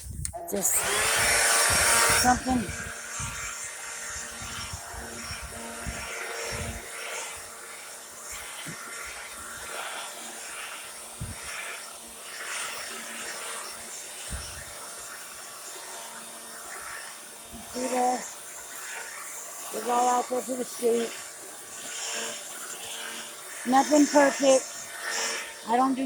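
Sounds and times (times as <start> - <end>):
wind thumps on microphone: 0.0 - 3.6
electric leaf blower running: 0.0 - 26.0.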